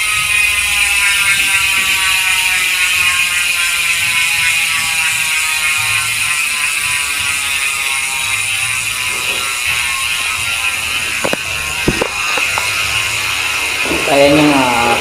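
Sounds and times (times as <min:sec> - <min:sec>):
bicycle hub freewheeling buzz: 0:00.0 - 0:15.0
sharp knocks: 0:11.2 - 0:12.7.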